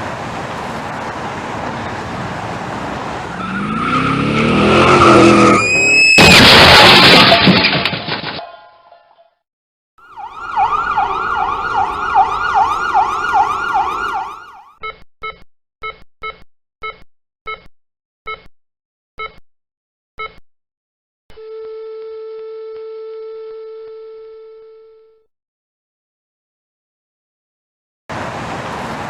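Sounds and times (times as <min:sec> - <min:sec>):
road noise: 0:00.0 - 0:07.6, 0:10.0 - 0:14.7, 0:28.1 - 0:29.0
emergency vehicle siren yelping: 0:03.3 - 0:06.2, 0:10.0 - 0:14.8
heart monitor beeps: 0:14.8 - 0:17.7, 0:18.3 - 0:18.5, 0:19.2 - 0:19.4, 0:20.2 - 0:20.4.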